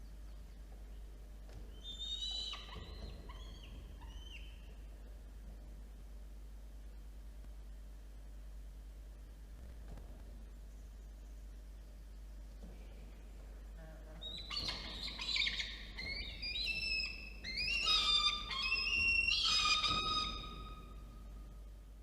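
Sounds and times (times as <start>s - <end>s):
falcon wailing calls: 1.8s - 4.6s, 14.2s - 21.1s.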